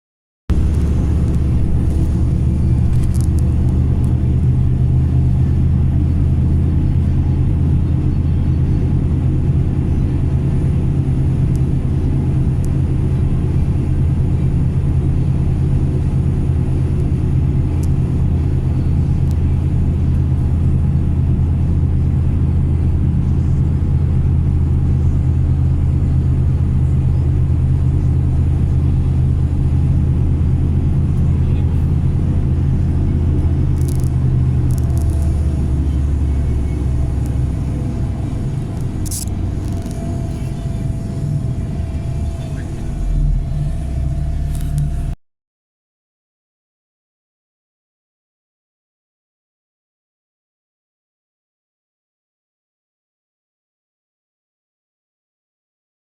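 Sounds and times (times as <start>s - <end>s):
vehicle engine humming: 0.5s - 45.2s.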